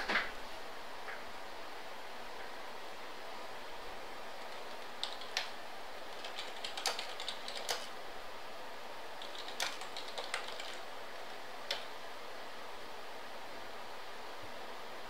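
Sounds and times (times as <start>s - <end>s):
steady background hiss: 0.0s - 15.0s
keyboard typing: 4.4s - 5.5s, 6.1s - 7.9s, 9.2s - 10.8s.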